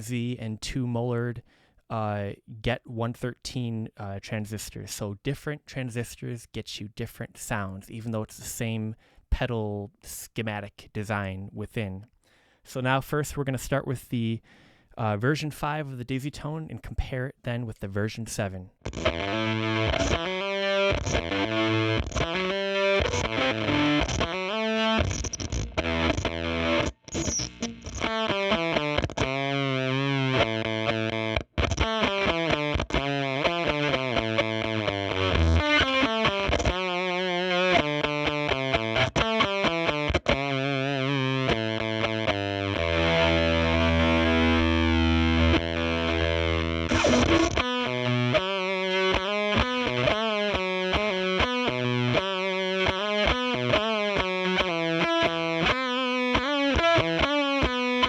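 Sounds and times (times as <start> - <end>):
fuzz electric guitar riffs: 18.8 - 58.0.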